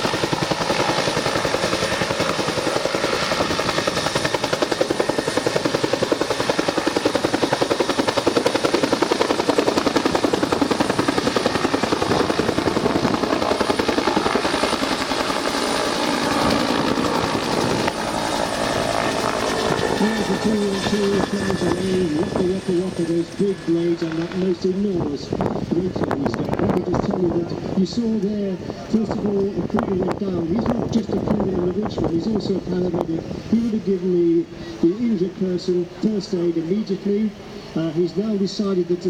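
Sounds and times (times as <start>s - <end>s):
helicopter engine hiss: 0.0s - 25.8s, 37.3s - 38.2s
helicopter rotor blades beating: 0.0s - 39.0s.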